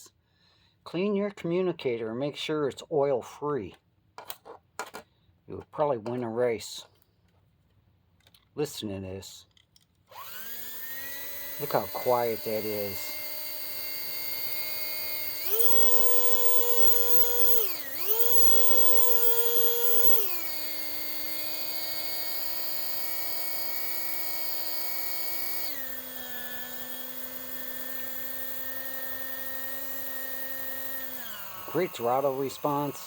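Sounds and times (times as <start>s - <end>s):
slot car motor whining: 10.2s - 33.0s.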